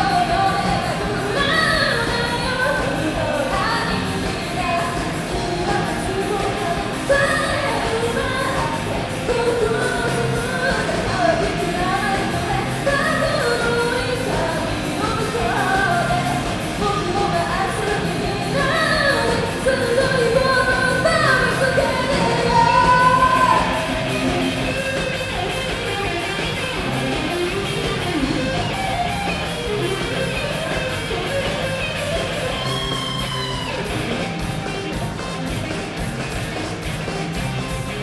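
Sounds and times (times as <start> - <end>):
electric guitar: 0.0 - 38.0
rock song with vocals and band: 0.0 - 38.0.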